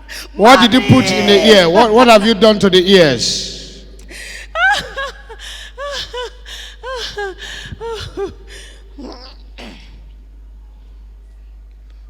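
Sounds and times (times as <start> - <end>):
woman yelping: 0.4 - 2.0.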